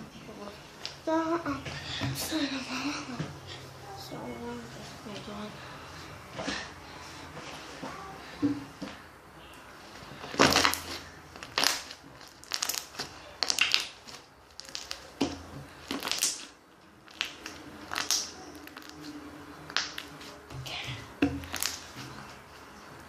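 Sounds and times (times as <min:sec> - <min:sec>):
crunching and crinkling handling: 0:09.9 - 0:20.5.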